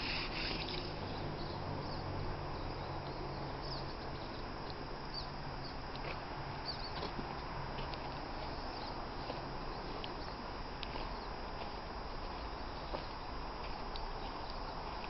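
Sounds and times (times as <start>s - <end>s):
steady low hum: 0.0s - 15.0s
high bird chirps: 6.6s - 7.0s.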